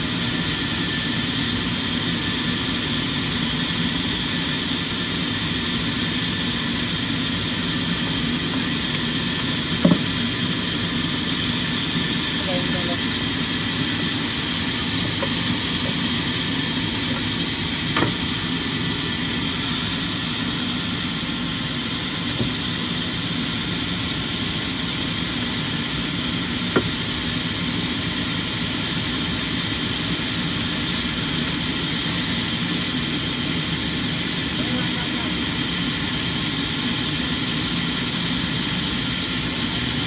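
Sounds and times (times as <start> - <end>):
sawmill machinery hum: 0.0 - 40.0
sharp knocks: 9.8 - 10.1, 17.9 - 18.2.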